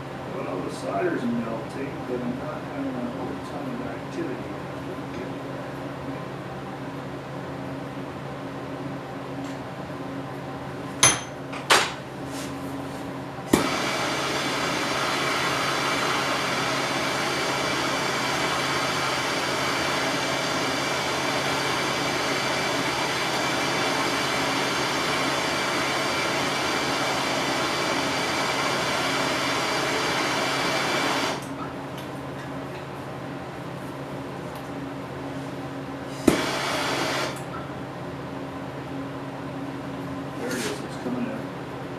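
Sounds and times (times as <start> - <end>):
gas torch hissing: 13.6 - 31.5, 36.1 - 37.4.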